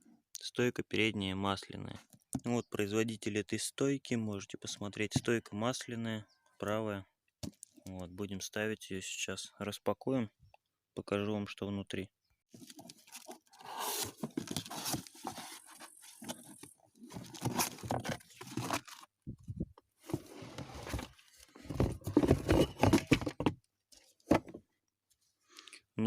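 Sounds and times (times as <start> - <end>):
cardboard and wrapping tearing: 12.6 - 19.1.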